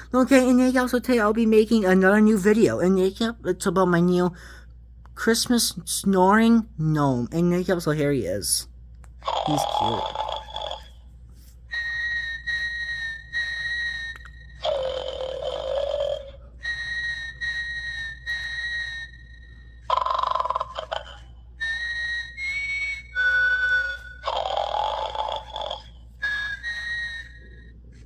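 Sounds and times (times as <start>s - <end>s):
toy snoring: 9.2s - 11.0s, 11.8s - 27.7s.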